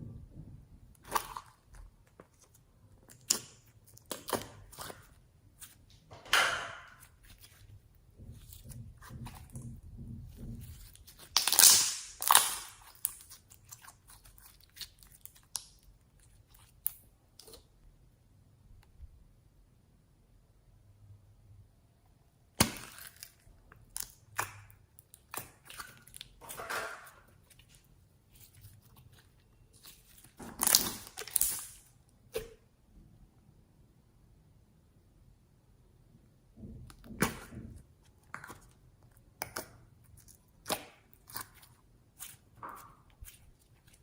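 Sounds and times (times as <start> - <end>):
slime clicks and crackles: 10.8 - 17.6, 29.8 - 31.8.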